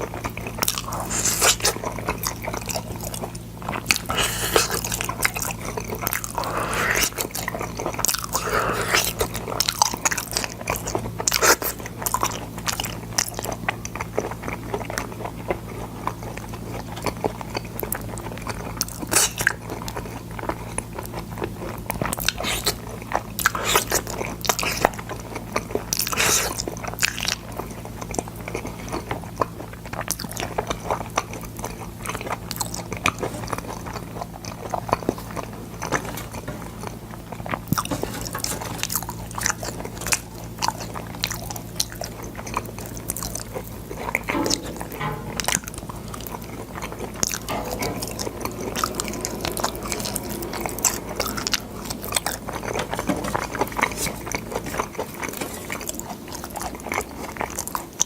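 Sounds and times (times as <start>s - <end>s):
chewing crunches: 0.0s - 58.0s
low hum: 43.9s - 54.9s.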